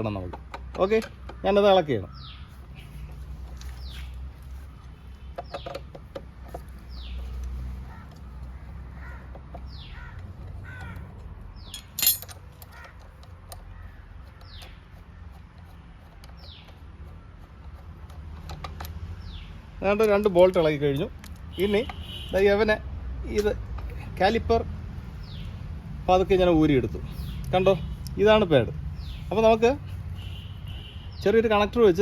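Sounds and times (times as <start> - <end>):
bird chirping: 0.8 - 17.8, 19.2 - 20.7, 25.0 - 32.0
spanner clicking on bolts: 9.2 - 22.0.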